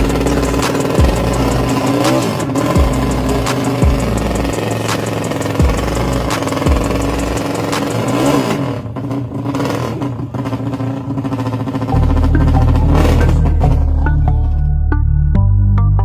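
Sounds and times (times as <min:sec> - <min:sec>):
background music: 0:00.0 - 0:08.5, 0:11.9 - 0:16.0
motorcycle engine revving: 0:00.0 - 0:14.5.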